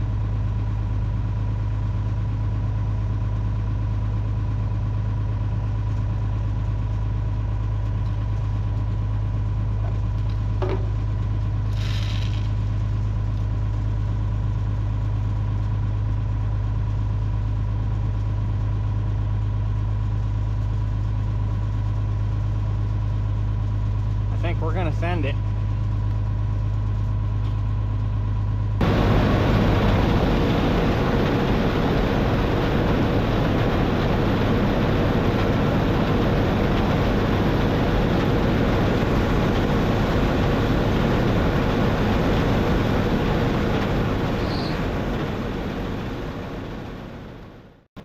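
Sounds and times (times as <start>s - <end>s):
engine idling: 0.0s - 47.8s
short rising chirp: 44.3s - 44.9s.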